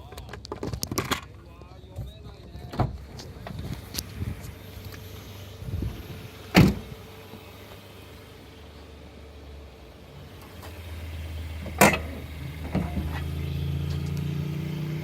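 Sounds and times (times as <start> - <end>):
car engine running: 0.1 - 15.0.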